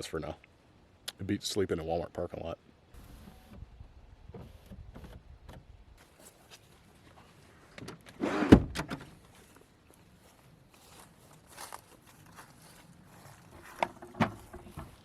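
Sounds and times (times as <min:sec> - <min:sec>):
car door creaking and shutting: 0:04.3 - 0:05.7, 0:07.8 - 0:09.2, 0:13.8 - 0:15.0.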